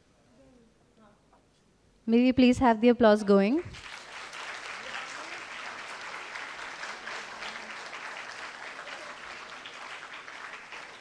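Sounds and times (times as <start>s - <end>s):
crowd applauding: 3.8s - 11.0s.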